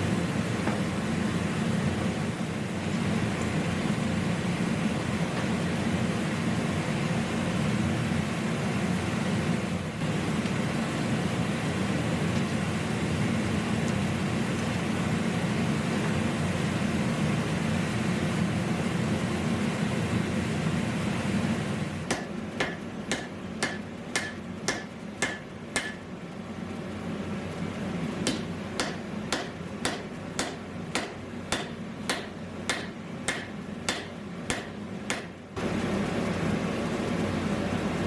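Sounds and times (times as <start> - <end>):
hammer striking steel on anvil: 22.1 - 26.1, 28.2 - 35.4.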